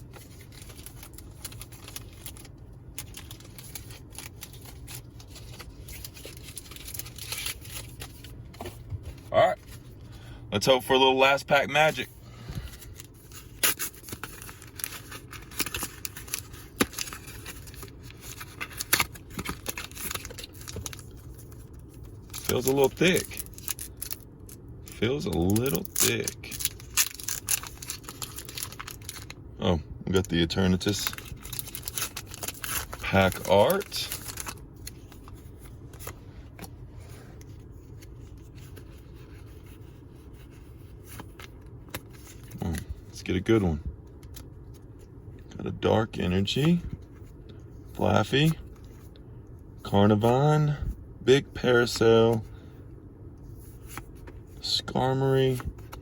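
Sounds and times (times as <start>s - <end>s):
foil wrapper tearing and crinkling: 0.1s - 8.2s, 13.0s - 29.4s, 30.7s - 35.3s.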